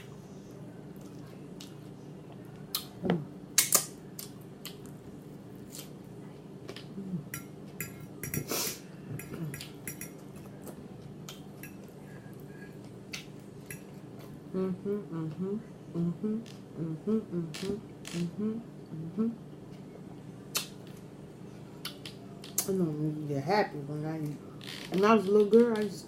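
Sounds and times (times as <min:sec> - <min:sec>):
fork clicking against plate: 0:09.2 - 0:10.2.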